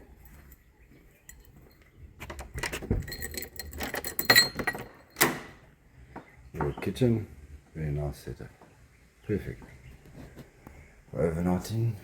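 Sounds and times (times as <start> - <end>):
keys jingling: 1.2 - 5.3
metallic clicks of door lock: 2.3 - 5.6.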